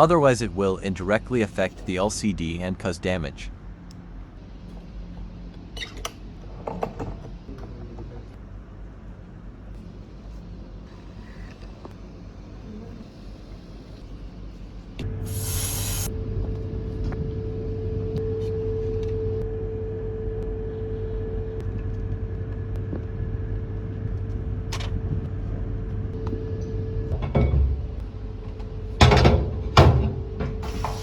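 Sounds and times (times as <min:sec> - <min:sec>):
small machine humming: 0:15.0 - 0:27.2
loud hiss: 0:15.2 - 0:16.1.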